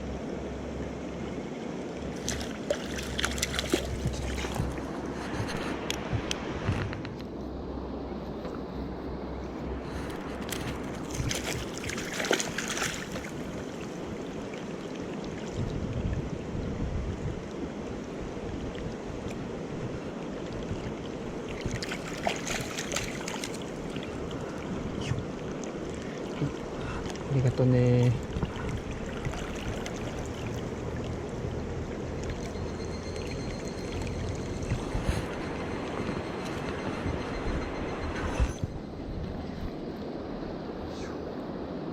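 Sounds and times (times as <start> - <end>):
stream water rushing: 0.0 - 6.7, 7.5 - 41.9
water splashing: 2.0 - 5.1, 10.4 - 15.8, 20.4 - 37.0.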